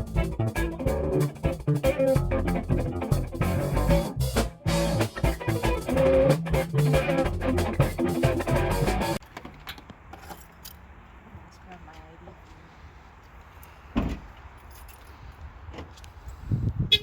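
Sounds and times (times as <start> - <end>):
band music with drums: 0.0 - 9.2.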